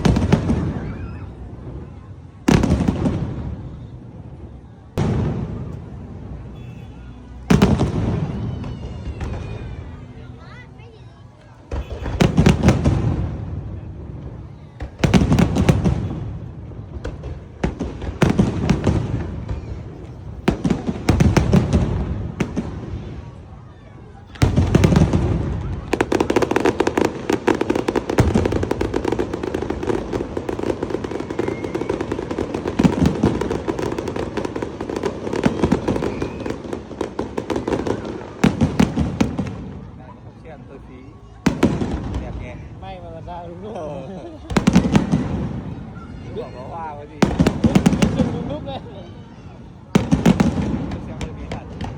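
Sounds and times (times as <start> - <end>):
fireworks bangs and crackling: 0.0 - 51.9.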